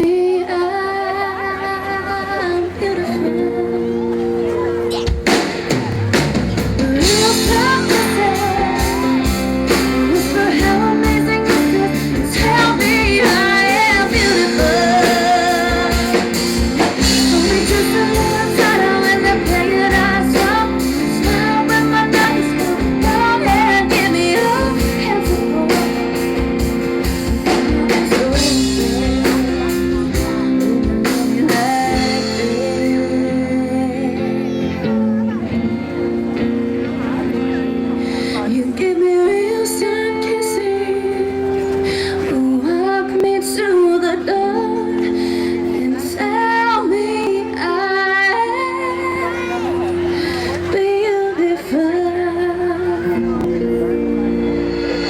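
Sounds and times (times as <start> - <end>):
person singing: 0.0 - 35.8, 37.4 - 55.0
guitar: 0.0 - 55.0
drum kit: 4.8 - 33.6, 53.2 - 55.0.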